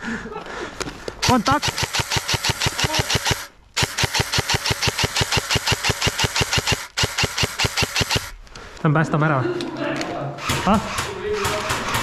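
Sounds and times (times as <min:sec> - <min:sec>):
airsoft gun firing bursts: 0:01.2 - 0:08.4, 0:10.4 - 0:12.0.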